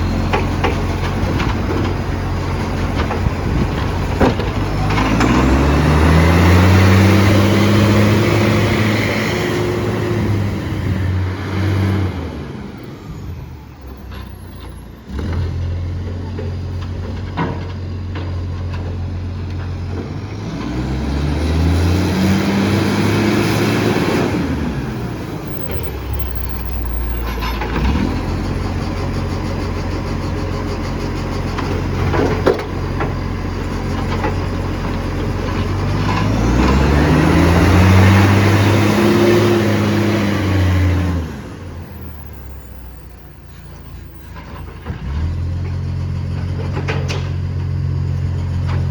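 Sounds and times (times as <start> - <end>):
loud rough diesel engine revving: 0.0 - 13.0, 15.1 - 16.1, 19.6 - 42.4.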